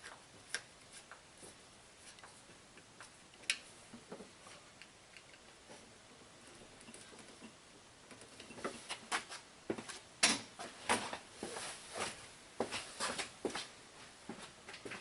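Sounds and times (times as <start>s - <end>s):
light clicks and knocks of tools: 2.1s - 9.3s.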